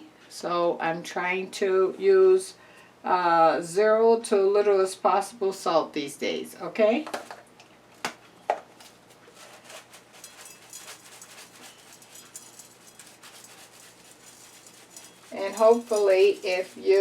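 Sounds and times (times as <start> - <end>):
seasoning shaker rattling: 9.3 - 17.0.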